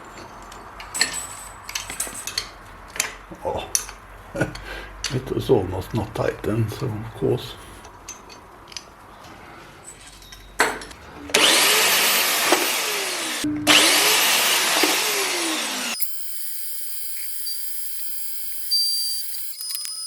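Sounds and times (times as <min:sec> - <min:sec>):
handheld power tool running: 0:11.3 - 0:19.8
faint high tone: 0:13.4 - 0:14.0.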